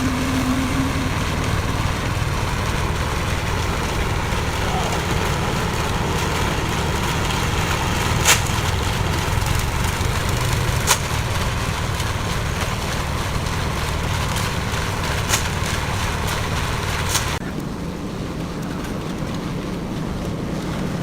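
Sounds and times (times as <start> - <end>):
concrete mixer engine running: 0.0 - 17.4.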